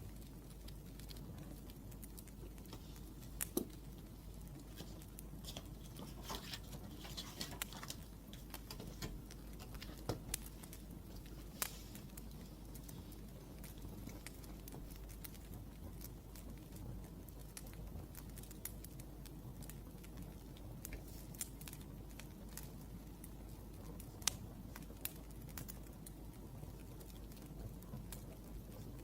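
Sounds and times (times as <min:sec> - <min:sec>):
soft steady low hiss: 0:00.0 - 0:29.0
wood fire crackling: 0:00.0 - 0:29.0.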